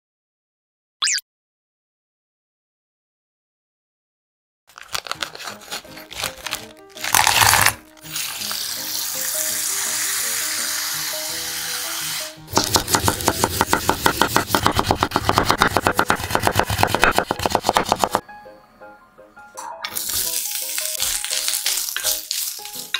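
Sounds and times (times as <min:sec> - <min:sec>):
soft background music: 0:04.7 - 0:22.9
fast sharp chopping strokes: 0:12.5 - 0:18.2.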